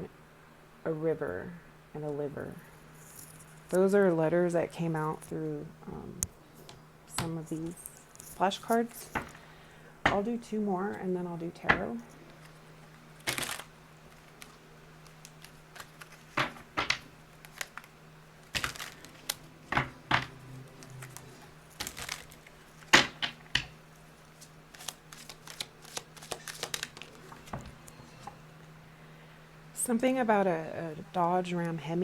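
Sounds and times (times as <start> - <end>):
faint low hum: 0.0 - 32.0
cards flicking and rustling: 13.2 - 28.4.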